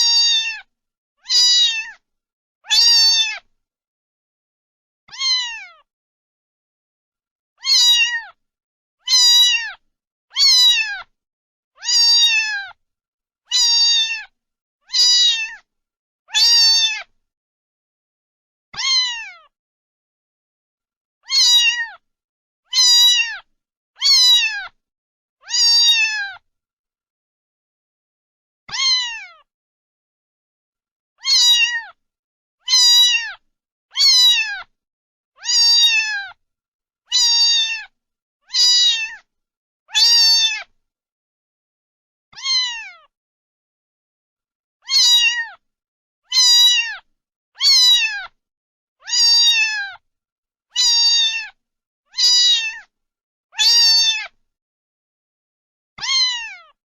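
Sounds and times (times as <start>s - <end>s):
cat meowing: 0.0s - 2.0s, 2.6s - 3.5s, 5.1s - 5.9s, 7.6s - 8.4s, 9.0s - 11.1s, 11.8s - 12.8s, 13.5s - 14.3s, 14.9s - 15.7s, 16.3s - 17.1s, 18.8s - 19.5s, 21.2s - 22.0s, 22.7s - 24.8s, 25.4s - 26.4s, 28.7s - 29.5s, 31.2s - 32.0s, 32.7s - 34.7s, 35.4s - 36.4s, 37.1s - 37.9s, 38.5s - 39.3s, 39.9s - 40.7s, 42.4s - 43.1s, 44.8s - 45.6s, 46.3s - 48.4s, 49.0s - 50.0s, 50.7s - 52.9s, 53.6s - 54.4s, 56.0s - 56.8s.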